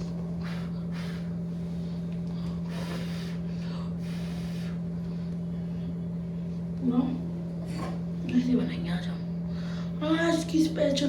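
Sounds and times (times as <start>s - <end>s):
steady low hum: 0.0s - 11.0s
person breathing: 0.4s - 5.0s.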